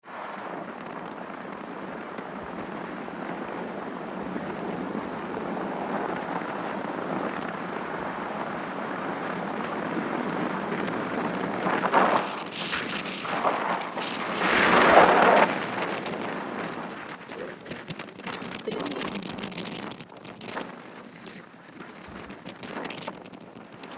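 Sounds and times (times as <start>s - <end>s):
wind gusts buffeting microphone: 0.4s - 23.9s
strong wind rushing: 10.8s - 23.9s.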